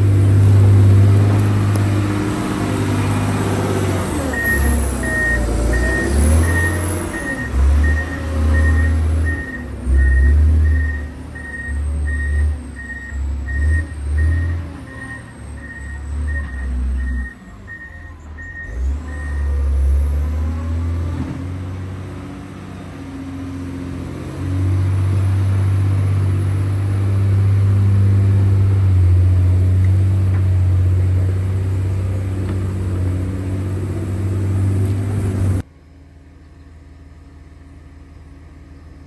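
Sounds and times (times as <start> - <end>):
diesel engine running: 0.0 - 39.0
reversing alarm beeping: 3.4 - 19.6.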